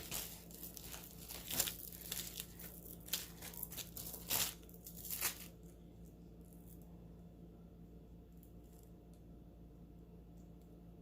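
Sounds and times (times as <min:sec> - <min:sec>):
packaging crinkling and tearing: 0:00.0 - 0:06.8.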